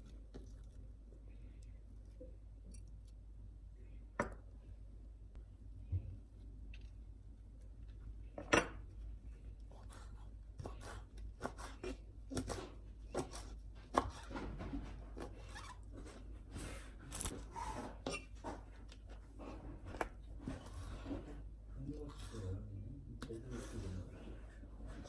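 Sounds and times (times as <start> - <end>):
knife chopping on cutting board: 9.7 - 14.4.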